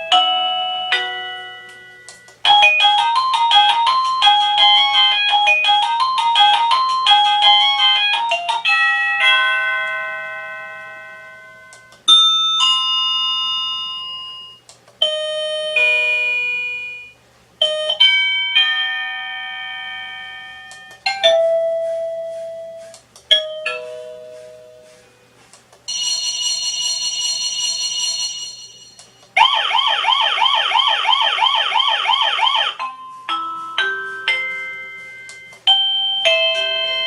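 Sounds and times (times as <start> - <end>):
doorbell chime tunes: 0.0 - 22.2, 23.3 - 24.7, 32.8 - 37.0
quick electronic melody: 2.5 - 8.7, 21.1 - 25.0, 29.4 - 37.0.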